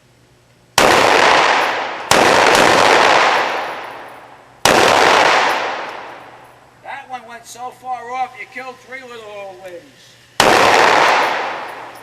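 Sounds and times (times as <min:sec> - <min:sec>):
pistol shots echoing: 0:00.8 - 0:06.4, 0:10.4 - 0:12.0.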